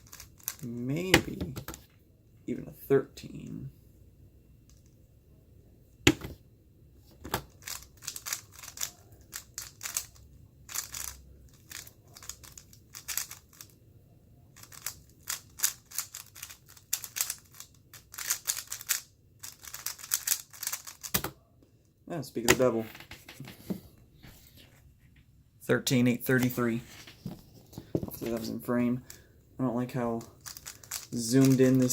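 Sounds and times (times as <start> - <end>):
puzzle cube plastic clicking: 0.0 - 1.9, 7.2 - 13.8, 14.6 - 21.4, 30.2 - 31.9.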